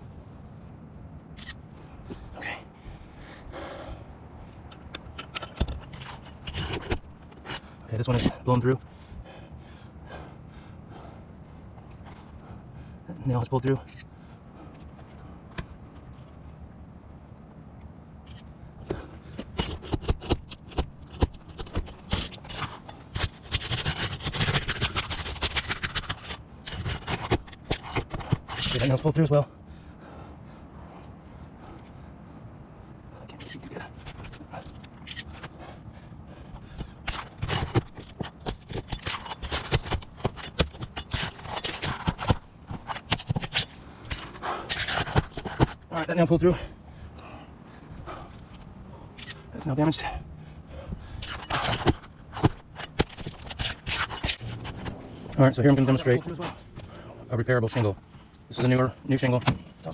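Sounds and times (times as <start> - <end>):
roof shingles scraping and clicking: 4.4 - 11.1, 18.2 - 29.9, 33.2 - 46.6, 47.2 - 59.9.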